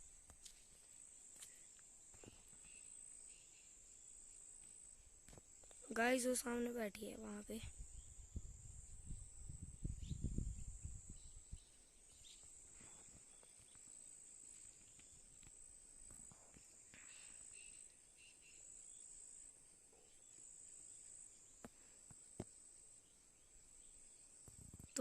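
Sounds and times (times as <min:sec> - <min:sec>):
wind rumble on microphone: 0:07.6 - 0:11.8.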